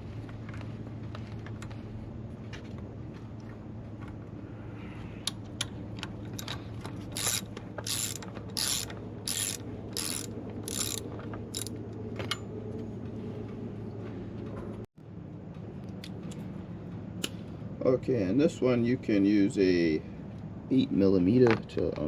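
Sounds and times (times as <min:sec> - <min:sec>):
steady low hum: 0:00.0 - 0:22.0
ratchet wrench clicking: 0:06.4 - 0:11.8.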